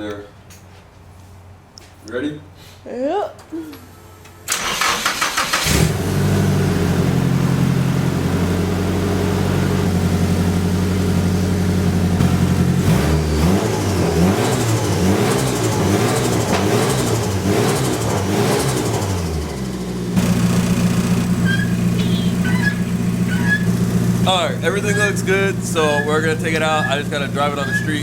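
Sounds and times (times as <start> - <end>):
engine starter cranking: 4.5 - 6.0, 20.2 - 28.0
car engine idling and revving: 4.5 - 28.0.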